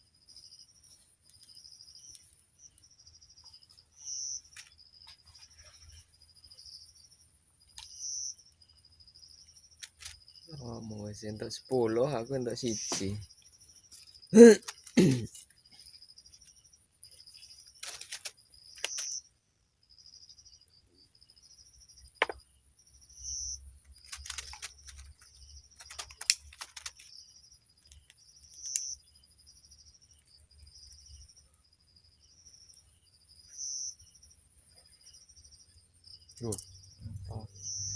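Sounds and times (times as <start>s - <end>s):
insects trilling: 0.0s - 37.9s
fishing tackle clicks and rustles: 24.0s - 27.2s.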